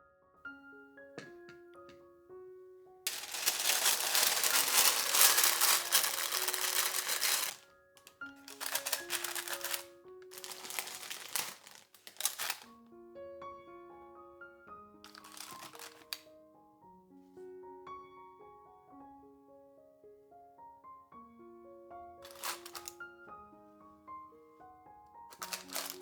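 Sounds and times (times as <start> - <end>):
gentle piano music: 0.0 - 26.0
crackly handling noise: 3.1 - 12.7, 15.1 - 16.2, 22.2 - 23.0, 25.3 - 26.0.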